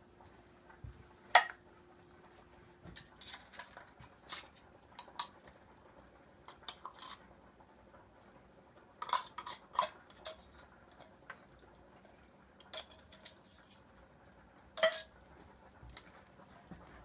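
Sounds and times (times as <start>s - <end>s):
metal utensil clinking against pot: 9.0s - 11.0s, 12.6s - 13.4s, 14.8s - 15.1s.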